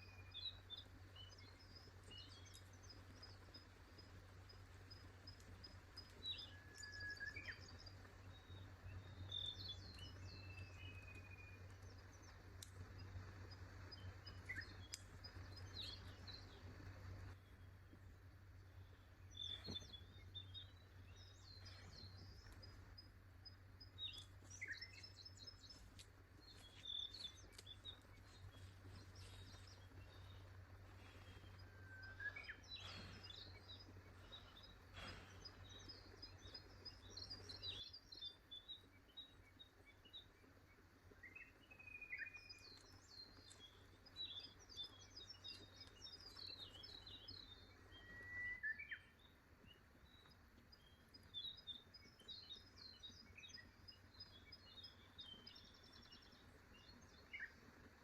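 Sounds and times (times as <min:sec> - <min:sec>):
low steady hum: 0:00.0 - 0:58.0
songbirds chirping and trilling: 0:00.0 - 0:58.0
bird whistles: 0:48.0 - 0:49.1.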